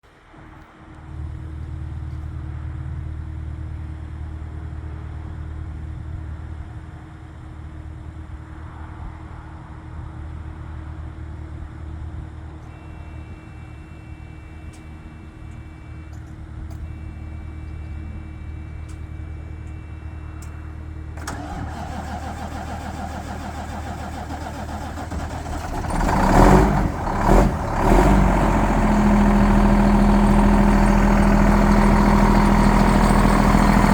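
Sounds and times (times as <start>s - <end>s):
diesel truck engine idling: 19.6s - 33.9s
truck engine revving: 21.2s - 33.9s.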